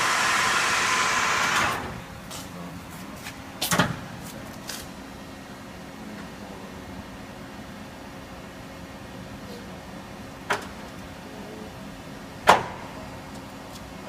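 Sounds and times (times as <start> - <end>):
lathe spindle running: 0.0 - 2.2.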